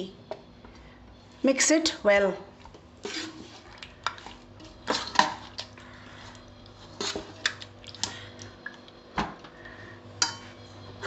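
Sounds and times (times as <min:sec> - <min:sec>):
soft squelches of thick mixture: 0:02.4 - 0:10.0
spoon clinking and scraping a pot: 0:03.0 - 0:05.7, 0:06.9 - 0:07.6, 0:10.2 - 0:10.7.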